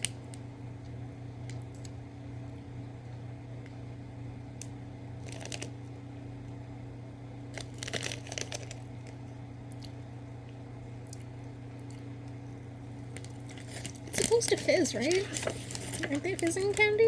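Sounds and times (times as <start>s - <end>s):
low electrical hum: 0.0s - 17.0s
candy wrapper crinkling: 5.2s - 5.8s, 7.6s - 9.2s, 13.1s - 17.0s.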